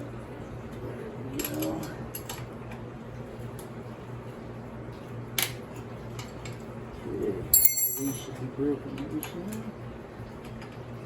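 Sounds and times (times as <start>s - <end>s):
steady low hum: 6.9s - 8.7s.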